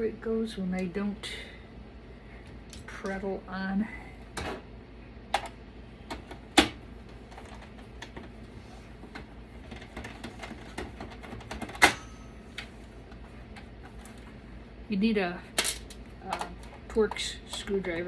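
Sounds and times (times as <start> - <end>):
computer parts clicking and tapping: 9.1 - 12.7.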